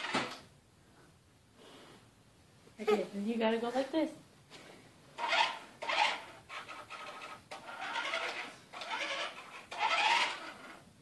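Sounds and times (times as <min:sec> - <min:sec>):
toy electric motor whirring: 0:05.2 - 0:10.8.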